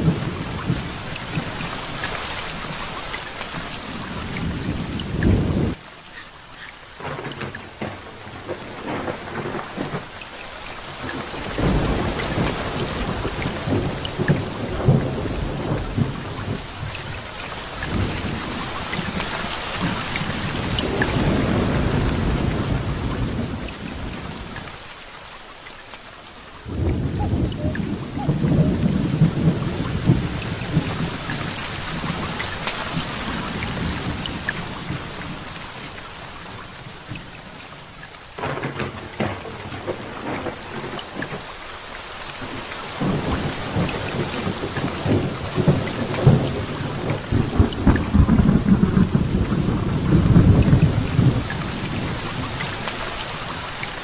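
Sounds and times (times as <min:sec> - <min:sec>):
steady rain: 0:00.0 - 0:54.0
rolling thunder: 0:03.9 - 0:05.8, 0:07.0 - 0:10.2, 0:11.0 - 0:24.6, 0:26.6 - 0:35.5, 0:38.4 - 0:41.5, 0:42.4 - 0:53.5.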